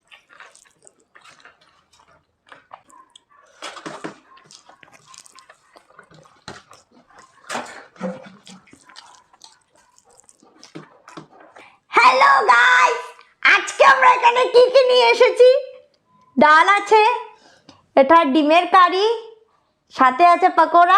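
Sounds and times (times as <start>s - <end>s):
utensils and food clinking: 0.0s - 11.7s.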